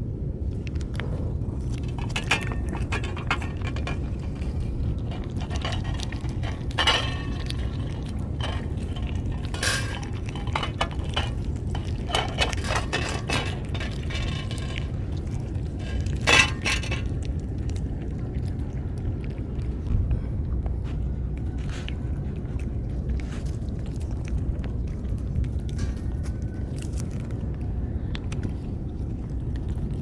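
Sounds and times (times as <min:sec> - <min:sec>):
steady low rumble: 0:00.0 - 0:30.0
cans and dishes clinking: 0:05.2 - 0:15.0, 0:15.7 - 0:17.1.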